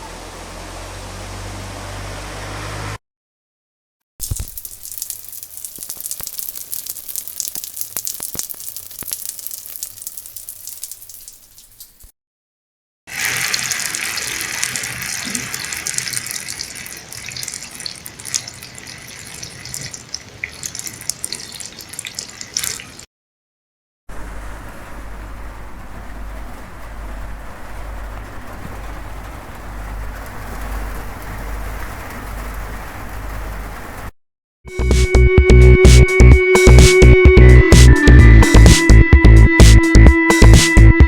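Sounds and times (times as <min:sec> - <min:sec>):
soft rain hiss: 0:04.2 - 0:12.1, 0:13.1 - 0:23.1, 0:24.1 - 0:34.1.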